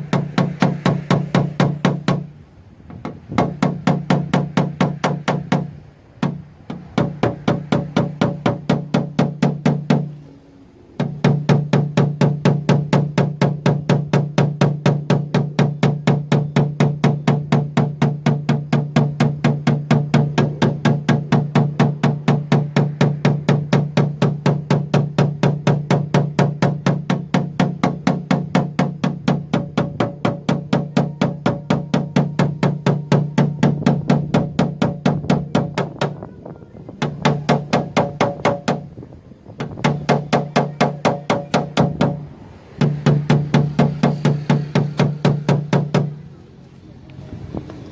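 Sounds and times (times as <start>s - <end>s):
hammer tapping car door panel: 37.0s - 38.8s, 39.6s - 42.2s, 42.8s - 46.1s.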